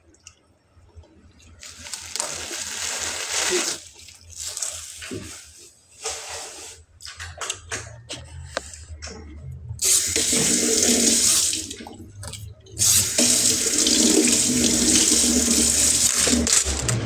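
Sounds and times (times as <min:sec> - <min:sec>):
water running from a tap: 0:01.6 - 0:05.4, 0:09.8 - 0:17.0.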